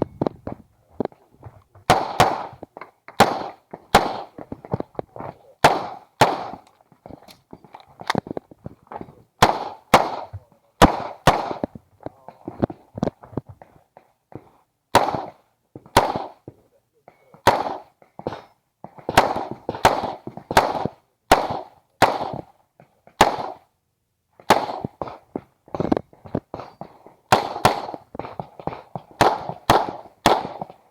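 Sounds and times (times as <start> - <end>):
pistol shots: 1.9 - 2.6, 3.2 - 4.8, 5.6 - 6.7, 9.4 - 11.7, 14.9 - 16.4, 17.4 - 22.5, 23.2 - 23.7, 24.4 - 25.9, 26.5 - 30.9.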